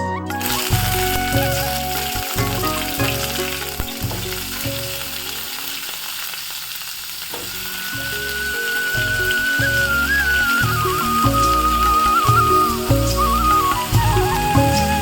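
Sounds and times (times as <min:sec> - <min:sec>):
background music: 0:00.0 - 0:06.6, 0:07.4 - 0:15.0
food sizzling in hot oil: 0:00.3 - 0:15.0.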